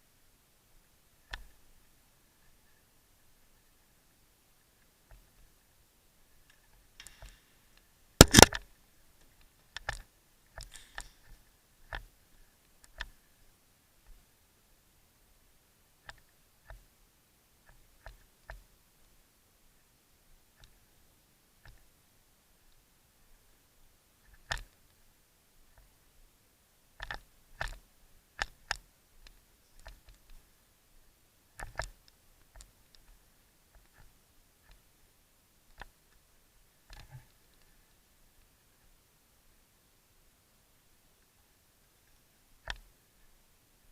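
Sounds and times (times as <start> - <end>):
airsoft gun shots: 8.2 - 8.6
sharp clicks and snaps: 8.2 - 8.7, 27.0 - 27.8.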